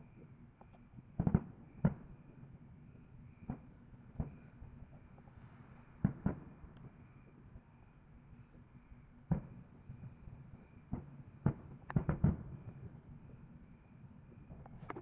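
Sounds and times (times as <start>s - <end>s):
distant fireworks bangs: 1.2s - 2.1s, 3.4s - 4.5s, 6.0s - 7.0s, 9.3s - 10.2s, 10.8s - 13.2s.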